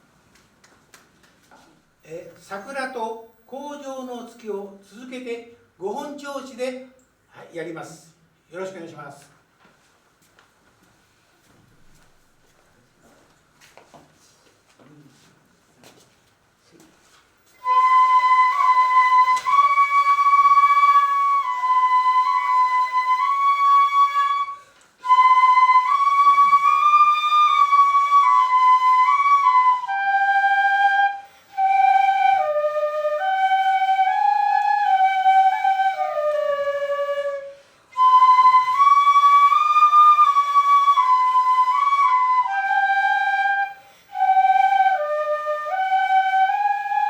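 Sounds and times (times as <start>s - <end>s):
bamboo flute melody: 17.5s - 47.0s.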